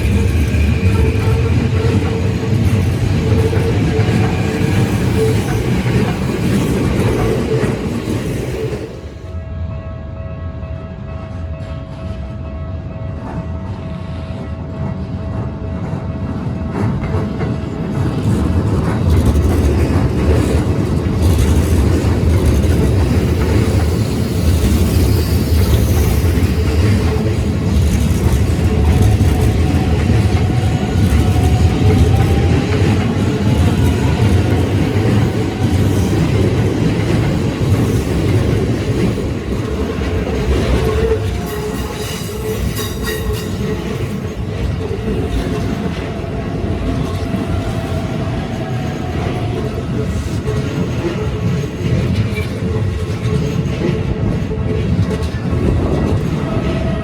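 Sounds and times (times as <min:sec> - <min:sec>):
electric train passing: 0:00.0 - 0:57.0
wheel squeal: 0:22.5 - 0:36.6.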